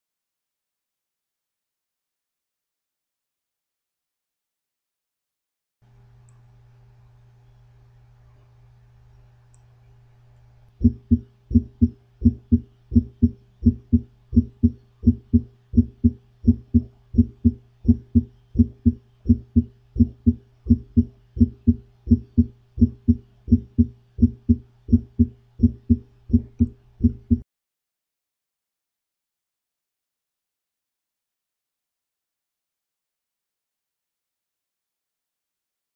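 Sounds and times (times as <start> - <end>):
constant low hum: 5.8 - 27.4
heartbeat lub-dub: 10.8 - 27.4.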